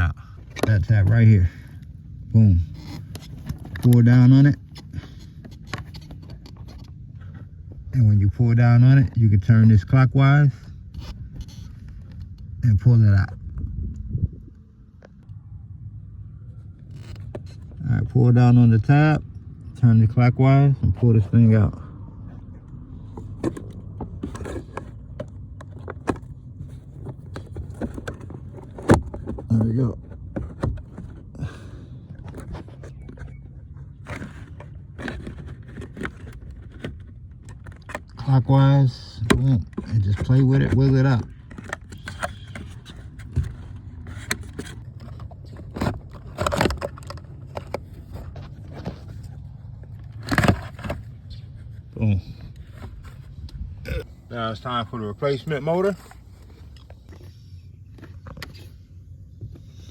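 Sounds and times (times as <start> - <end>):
low steady hum: 0.0 - 59.9
plastic clicks knocks and scraping: 2.7 - 7.5, 22.6 - 31.4, 32.1 - 38.3, 39.2 - 51.1.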